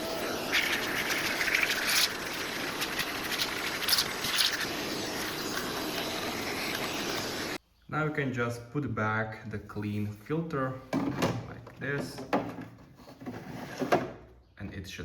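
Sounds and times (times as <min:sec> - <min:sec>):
vacuum cleaner running: 0:00.0 - 0:07.6.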